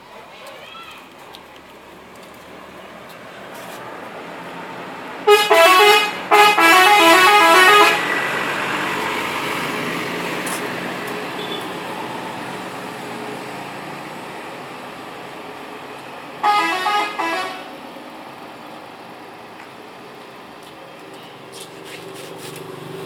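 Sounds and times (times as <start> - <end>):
bus passing: 0.0 - 23.0
bus horn playing a tune: 5.2 - 8.4, 11.3 - 11.8, 16.4 - 17.8.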